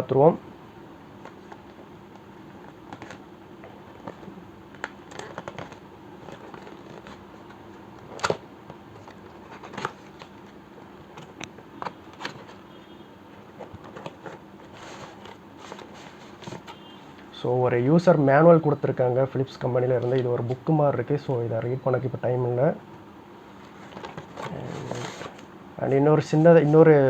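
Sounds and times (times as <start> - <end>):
cardboard box scrapes and rustles: 13.7 - 16.7, 23.7 - 25.4.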